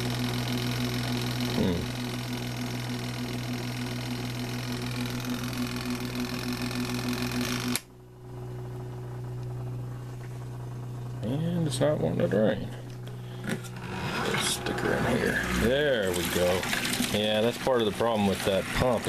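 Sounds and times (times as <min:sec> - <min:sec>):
washing machine whirring: 0:00.0 - 0:19.0.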